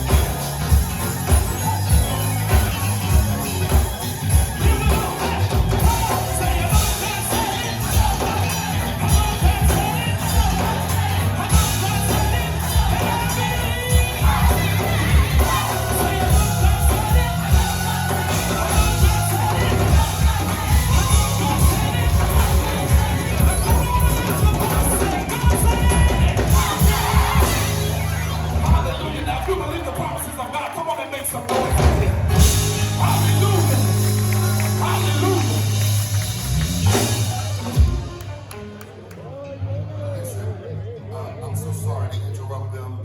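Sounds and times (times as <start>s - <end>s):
gospel choir singing: 0.0s - 30.1s, 31.6s - 38.1s
drums and bass beat: 0.0s - 30.2s, 31.5s - 38.7s.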